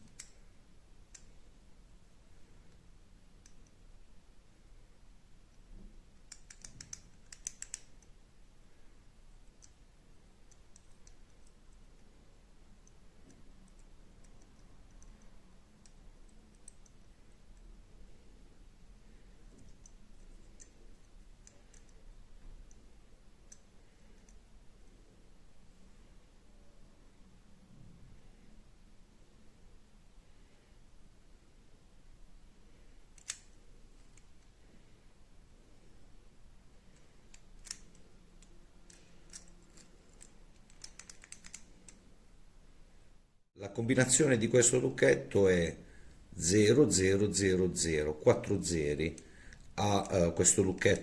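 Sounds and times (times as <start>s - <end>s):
combination padlock clicking: 0.0s - 1.4s, 5.5s - 8.2s, 9.4s - 12.0s, 19.5s - 22.8s, 33.1s - 34.4s, 36.9s - 42.0s.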